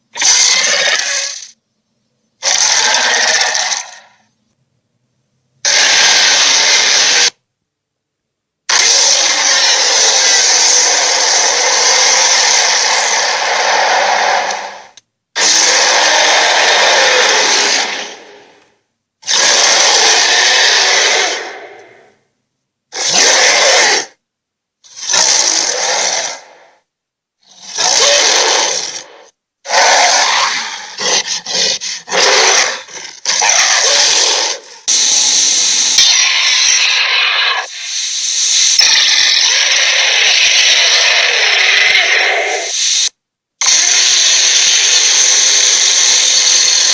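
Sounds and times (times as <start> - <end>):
loud noisy dragon blasts: 2.4 - 4.0, 5.7 - 7.4, 8.7 - 18.6, 19.3 - 22.1, 27.7 - 42.9.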